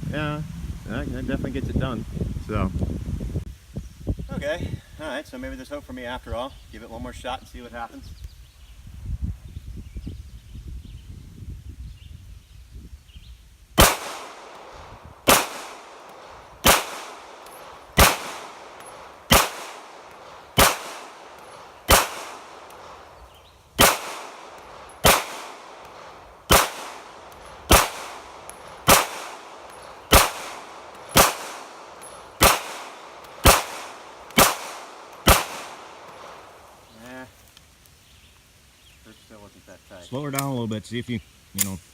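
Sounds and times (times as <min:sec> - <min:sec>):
pistol shots: 0:13.8 - 0:23.1, 0:23.8 - 0:36.6.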